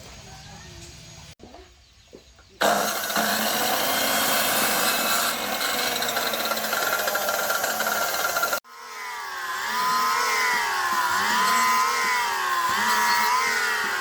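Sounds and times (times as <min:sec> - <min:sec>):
power tool rasping: 0:02.6 - 0:08.6, 0:09.3 - 0:14.0.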